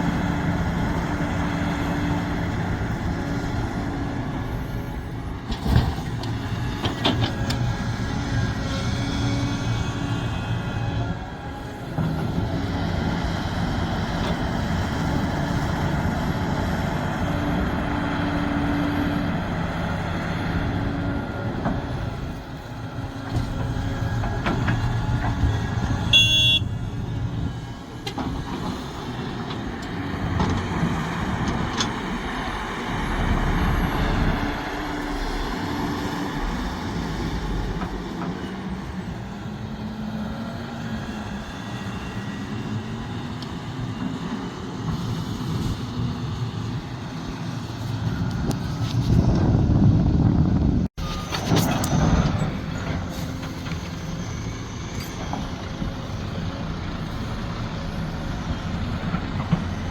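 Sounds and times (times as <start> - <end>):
excavator diesel engine running: 0.0 - 59.9
brief high squeal: 51.0 - 53.3.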